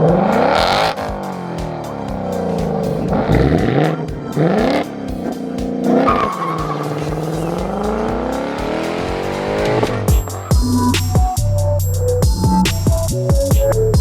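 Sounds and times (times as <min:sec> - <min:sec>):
car exhaust revving: 0:00.0 - 0:11.0
music: 0:00.0 - 0:14.0
tires squealing: 0:02.3 - 0:10.1.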